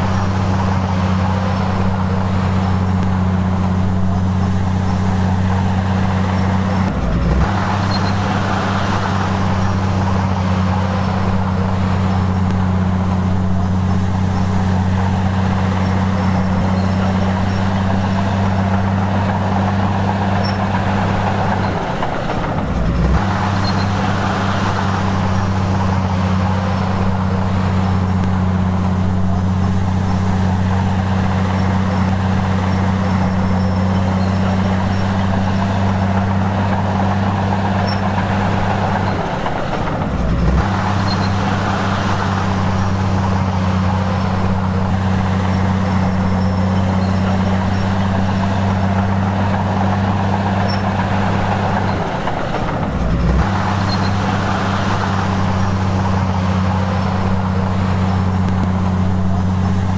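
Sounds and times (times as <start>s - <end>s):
diesel engine droning: 0.0s - 59.9s.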